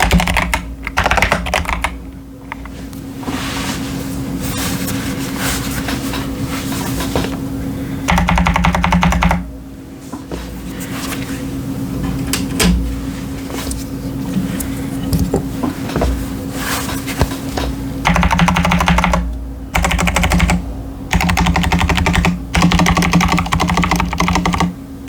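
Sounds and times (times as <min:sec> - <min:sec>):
fast run of key clicks: 0:00.0 - 0:02.0, 0:18.1 - 0:19.2, 0:19.8 - 0:24.7
keyboard typing: 0:00.0 - 0:02.7, 0:08.1 - 0:09.4, 0:18.0 - 0:24.7.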